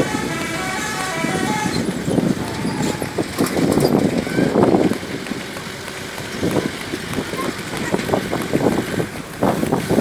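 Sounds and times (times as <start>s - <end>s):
multi-tone musical truck horn: 0.0s - 2.0s
traffic noise: 0.0s - 10.0s
people shouting: 4.2s - 4.8s.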